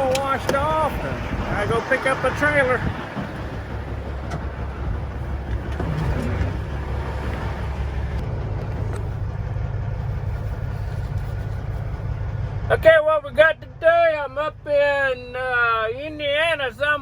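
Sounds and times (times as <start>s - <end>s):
truck diesel engine drone: 0.0s - 17.0s.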